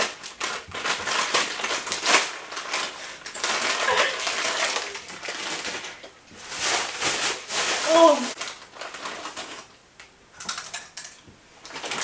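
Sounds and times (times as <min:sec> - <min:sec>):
crisps crunching: 0:00.0 - 0:09.8, 0:10.4 - 0:12.0
snack packet rustling: 0:00.0 - 0:09.8, 0:10.4 - 0:12.0.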